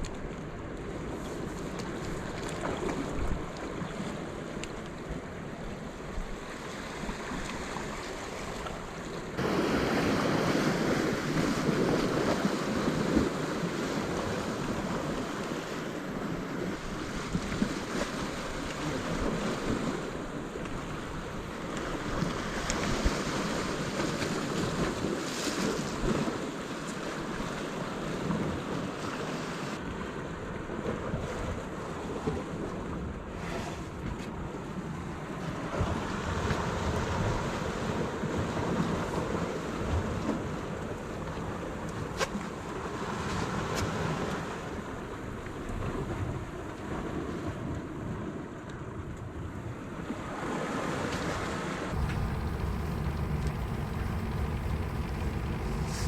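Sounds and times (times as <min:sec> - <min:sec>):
sea waves washing ashore: 0:00.5 - 0:30.4, 0:50.2 - 0:56.0
wind buffeting microphone: 0:51.9 - 0:56.0.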